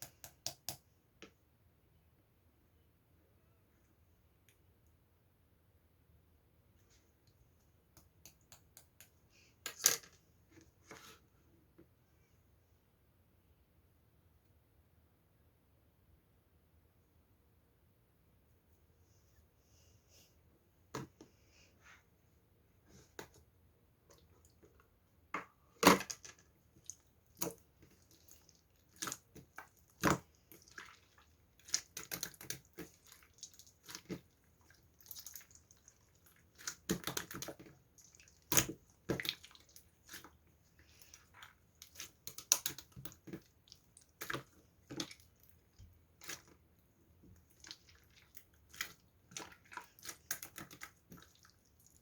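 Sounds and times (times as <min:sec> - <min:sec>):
wet crackly handling noises: 0:25.8 - 0:52.0.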